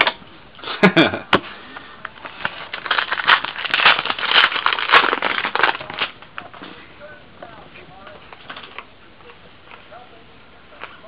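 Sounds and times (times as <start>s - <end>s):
wrapper crinkling: 2.2s - 6.5s.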